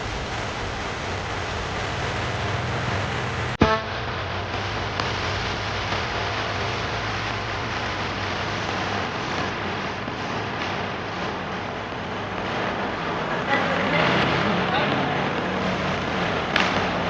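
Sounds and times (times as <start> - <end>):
road traffic hiss: 0.0 - 17.0
short pitched blip: 3.6 - 3.9.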